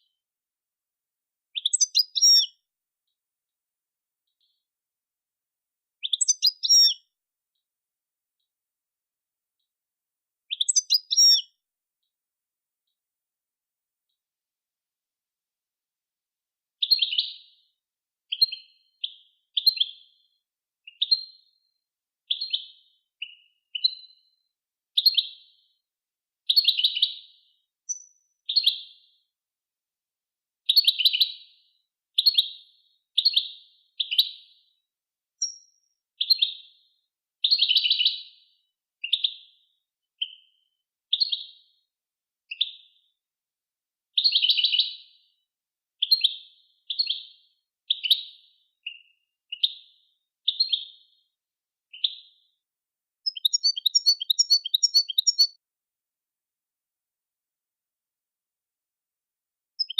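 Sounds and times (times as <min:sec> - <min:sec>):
songbird twittering: 0:01.6 - 0:02.5, 0:06.0 - 0:07.0, 0:10.5 - 0:11.5, 0:35.4 - 0:35.8, 0:53.2 - 0:55.6.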